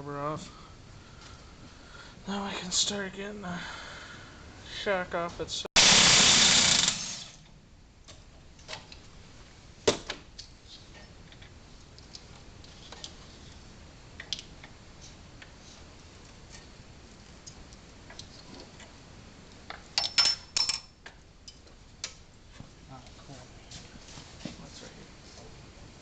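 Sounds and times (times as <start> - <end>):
clinks of hand tools and metal: 20.0 - 21.6.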